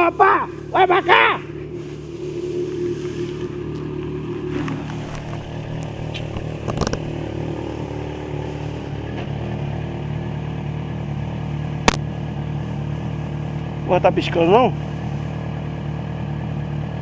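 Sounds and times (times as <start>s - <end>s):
motorcycle engine running steadily: 0.0s - 17.0s
sharp click: 11.8s - 12.1s.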